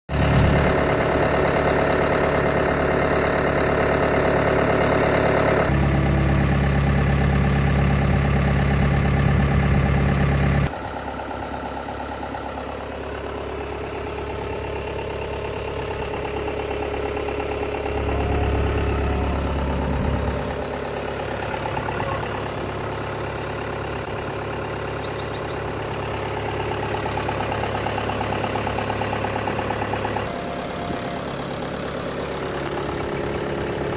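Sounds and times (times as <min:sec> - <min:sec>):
diesel engine idling: 0:00.1 - 0:33.9.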